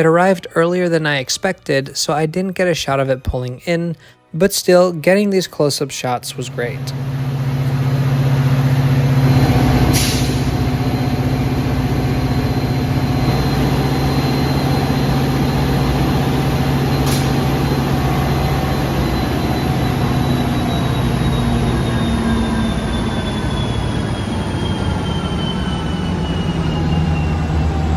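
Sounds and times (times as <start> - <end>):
diesel locomotive idling: 6.3 - 27.9
air release hisses: 9.8 - 11.0, 16.9 - 17.8.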